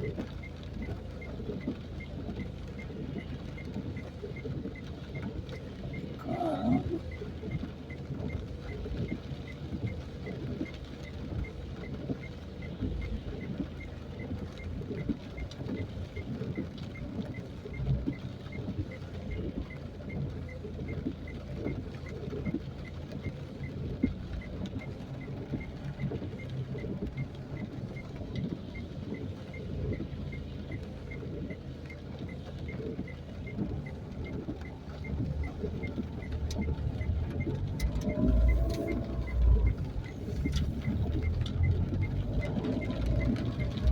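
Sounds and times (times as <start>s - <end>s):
low crackly outdoor rumble: 0.0s - 43.9s.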